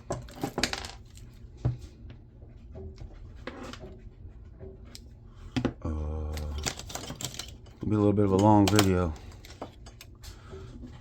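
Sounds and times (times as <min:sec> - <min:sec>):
scrap parts and tools clicking: 0:06.4 - 0:11.0.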